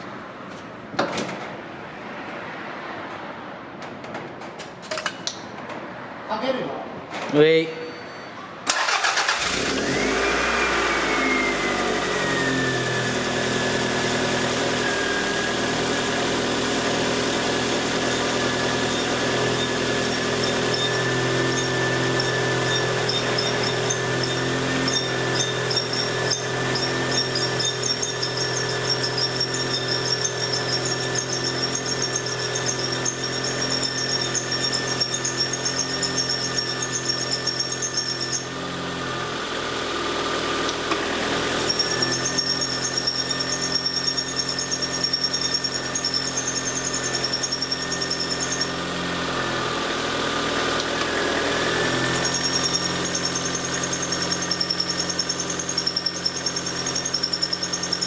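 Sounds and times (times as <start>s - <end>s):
high-pitched chirping squeal: 7.8s - 9.4s, 18.2s - 38.5s, 41.6s - 48.8s, 52.0s - 58.0s.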